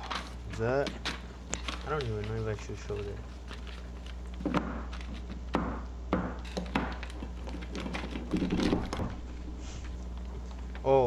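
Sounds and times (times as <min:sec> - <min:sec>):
sharp knocks: 0:05.5 - 0:07.0.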